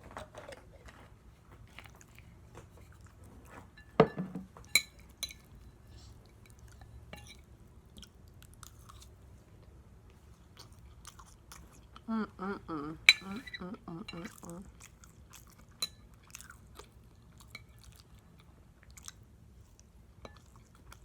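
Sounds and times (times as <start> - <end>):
close chewing: 0.7 - 3.6, 7.8 - 12.1, 14.1 - 21.0.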